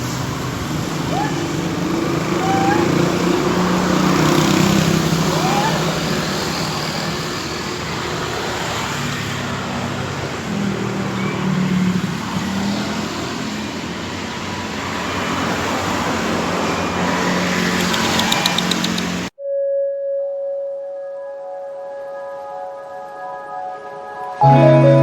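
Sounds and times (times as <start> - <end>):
vehicle engines passing: 0.0 - 19.3
road noise: 0.0 - 19.4
quick high clicks: 17.7 - 19.3.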